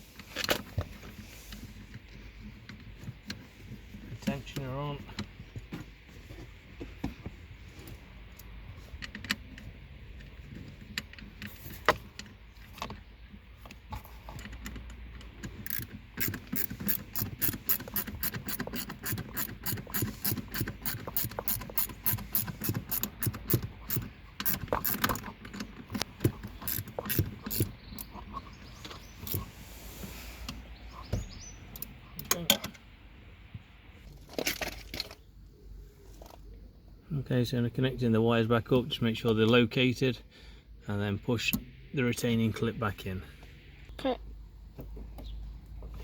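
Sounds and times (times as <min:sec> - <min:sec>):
scattered clicks and knocks: 0:13.7 - 0:29.4
ratchet wrench clicking: 0:15.6 - 0:25.3, 0:26.0 - 0:28.1.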